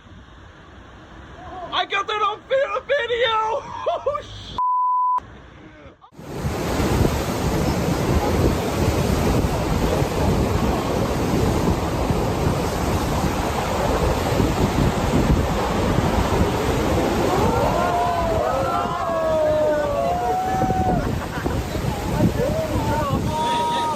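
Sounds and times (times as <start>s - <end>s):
heavy ocean surf: 0.0s - 4.4s, 6.1s - 23.9s
wind buffeting microphone: 6.2s - 23.9s.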